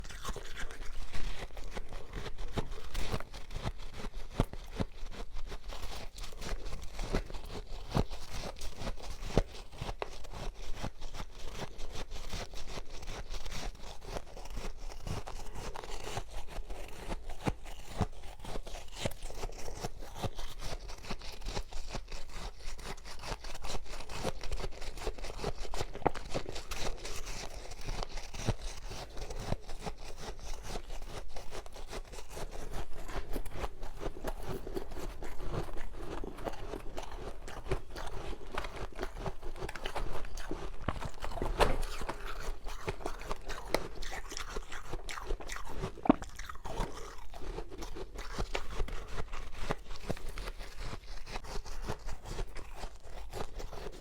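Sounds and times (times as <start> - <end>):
frost crunching and scraping: 0.0 - 54.0.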